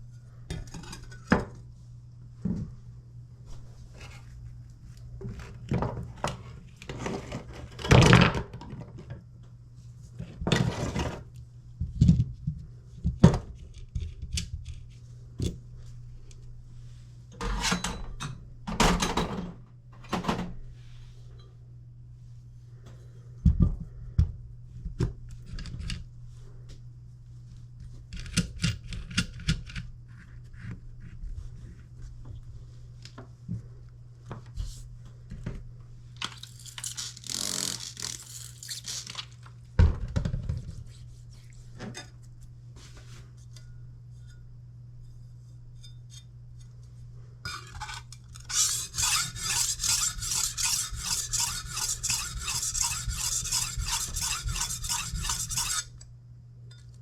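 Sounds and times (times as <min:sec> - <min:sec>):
steady low hum: 0:08.9 - 0:37.2, 0:38.2 - 0:57.0
knife scraping on sharpening stone: 0:47.5 - 0:55.9
short rub: 0:48.5 - 0:55.9.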